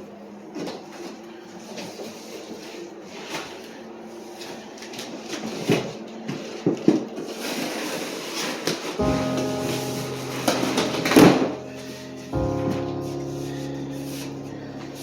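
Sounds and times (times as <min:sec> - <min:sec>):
furniture pieces rustling: 0:05.2 - 0:15.0
background music: 0:09.0 - 0:15.0.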